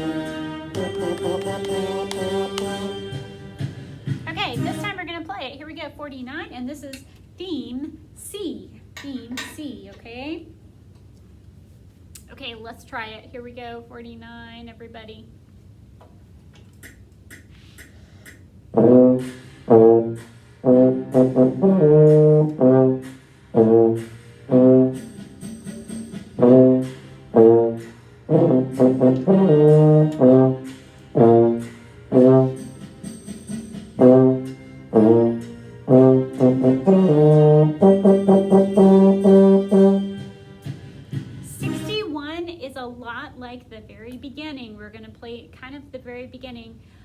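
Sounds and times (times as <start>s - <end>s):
trombone playing bluesy phrase: 0.0s - 3.5s, 4.3s - 5.0s, 18.8s - 25.0s, 26.4s - 32.6s, 34.0s - 40.2s, 41.5s - 42.2s.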